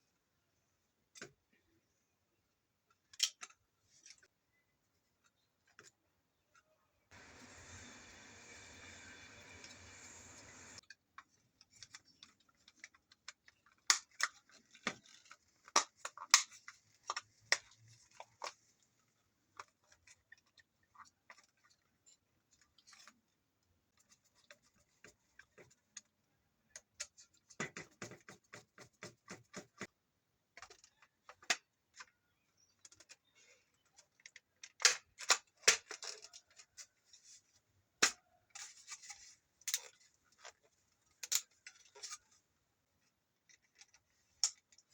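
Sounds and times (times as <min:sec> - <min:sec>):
small parts clicking and tapping: 0:02.8 - 0:04.4, 0:30.5 - 0:36.9, 0:38.0 - 0:42.4, 0:43.4 - 0:44.9
scraping rustles of small parts: 0:10.7 - 0:26.1, 0:38.5 - 0:44.9.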